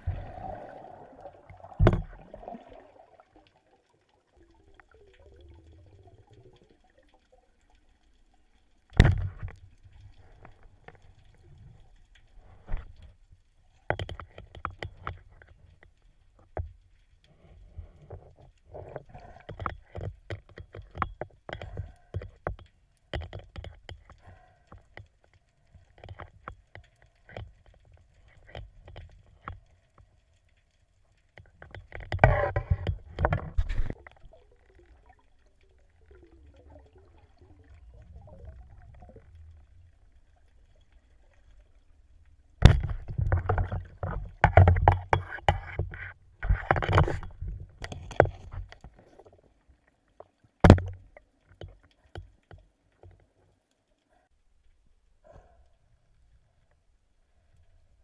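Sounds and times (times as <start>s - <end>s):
rush of water bubbles: 0.0s - 3.7s
water washing against camera: 0.0s - 7.2s, 25.6s - 49.3s
underwater clicks and knocks: 1.5s - 2.8s, 8.8s - 53.6s.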